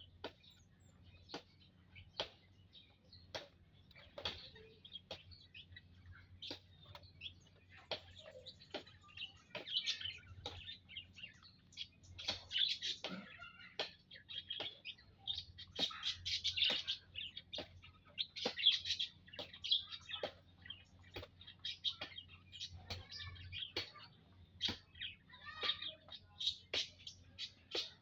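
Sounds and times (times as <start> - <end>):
flock of birds chirping: 0.0 - 28.0.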